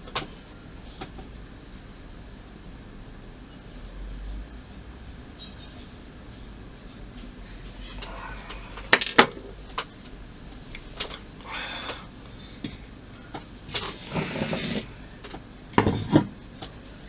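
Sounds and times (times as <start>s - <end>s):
plastic parts clicking together: 8.8s - 9.4s.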